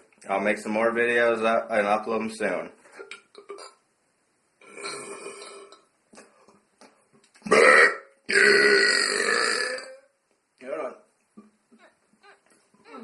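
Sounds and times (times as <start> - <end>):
man burping: 3.0 - 3.8, 4.6 - 5.8, 7.4 - 10.1.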